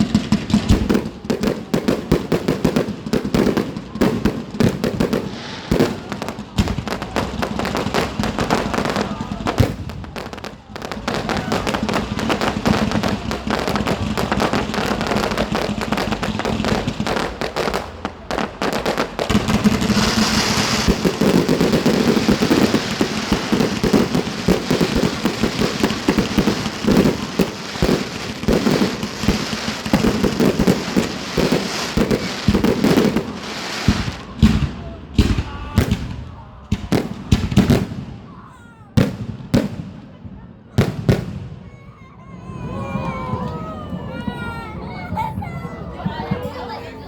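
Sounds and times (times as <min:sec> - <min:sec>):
fireworks bangs and crackles: 0:00.0 - 0:47.0
firework hiss: 0:05.0 - 0:09.9, 0:18.9 - 0:34.3.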